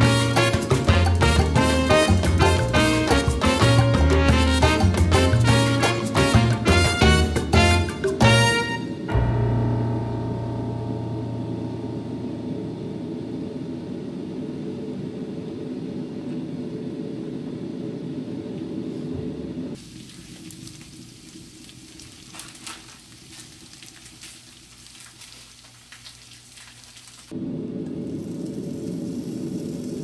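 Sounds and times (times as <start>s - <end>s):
steady low sound: 9.0s - 19.8s, 27.3s - 30.0s
food sizzling in a frying pan: 19.8s - 27.3s, 28.0s - 30.0s.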